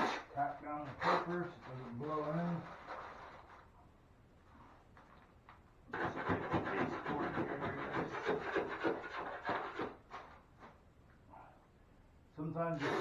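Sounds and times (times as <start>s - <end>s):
paper and tape rustling: 0.8s - 3.8s.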